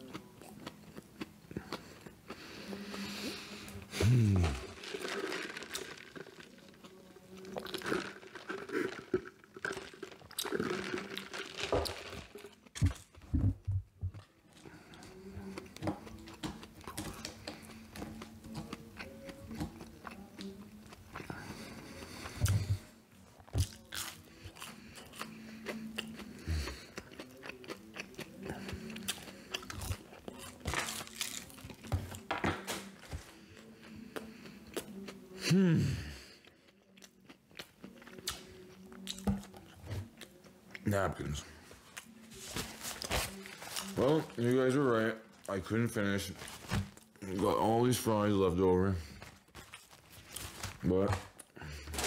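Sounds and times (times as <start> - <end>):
person biting and chewing: 3.9 - 13.2, 23.4 - 35.1, 49.2 - 52.0.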